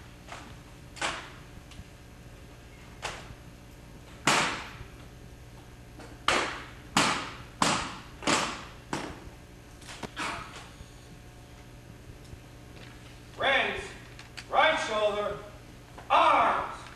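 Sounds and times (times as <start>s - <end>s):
rifles being slapped and caught: 0.3s - 1.4s, 3.0s - 3.3s, 4.2s - 4.8s, 6.0s - 9.2s.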